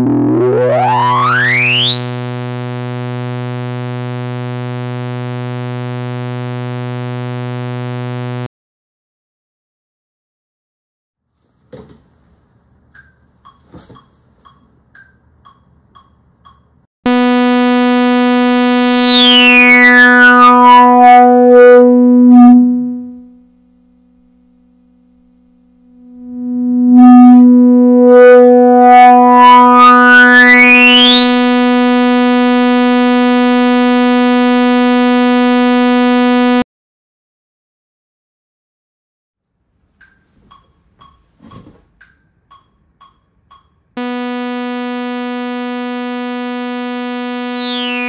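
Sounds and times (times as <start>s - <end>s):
synthesizer filter sweep: 0.0s - 8.5s, 17.1s - 36.6s, 44.0s - 48.0s.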